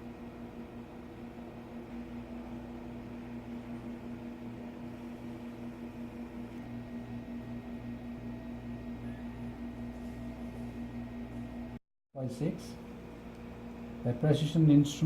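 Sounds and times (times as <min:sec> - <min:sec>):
electric motors humming: 0:01.8 - 0:11.8.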